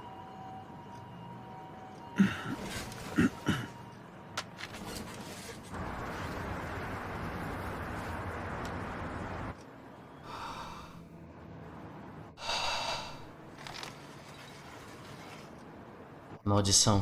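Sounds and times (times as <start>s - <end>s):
steady rushing noise: 5.8s - 9.6s
man breathing and gasping: 12.4s - 13.3s.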